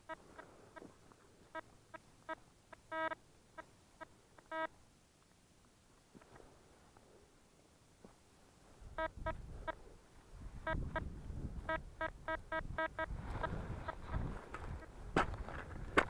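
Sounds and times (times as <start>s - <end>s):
metal detector beeping: 0.0s - 0.9s, 1.5s - 4.8s, 9.0s - 9.8s, 10.6s - 14.2s
coil rustling through ground cover: 13.0s - 16.0s.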